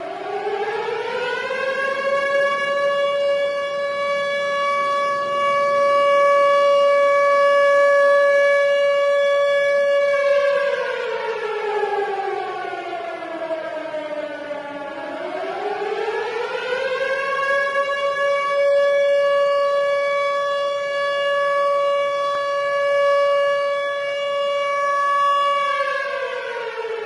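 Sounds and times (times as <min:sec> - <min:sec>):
tornado warning siren wailing: 0:00.0 - 0:27.0.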